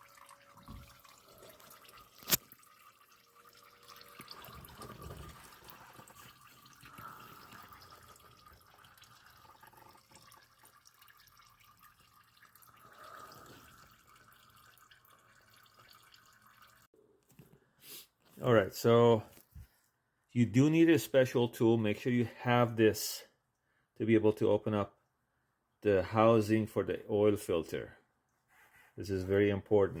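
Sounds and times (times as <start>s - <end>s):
oil dripping into pan: 6.0s - 13.0s.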